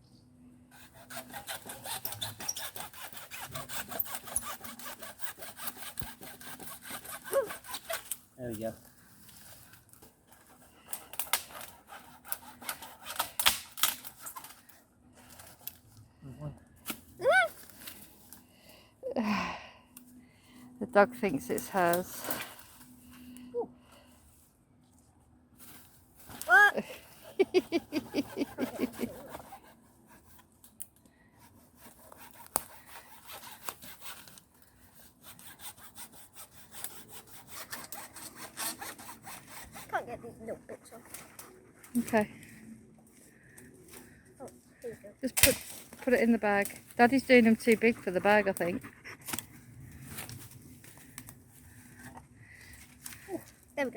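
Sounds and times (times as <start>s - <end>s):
hand saw cutting a branch: 0.7s - 15.8s, 20.9s - 23.4s, 25.6s - 42.6s, 43.9s - 53.9s
dry wood cracking: 9.6s - 14.8s, 43.4s - 47.2s.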